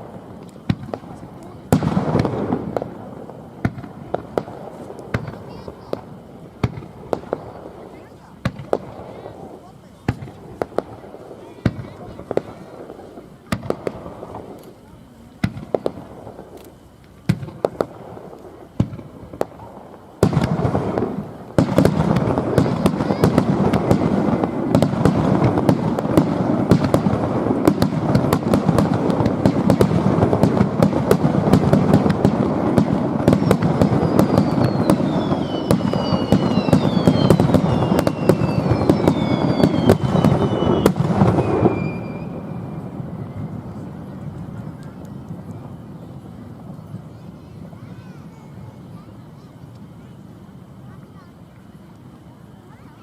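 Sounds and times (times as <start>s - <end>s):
falling firework whistles: 0.0s - 53.0s
fireworks bangs and crackling: 0.0s - 53.0s.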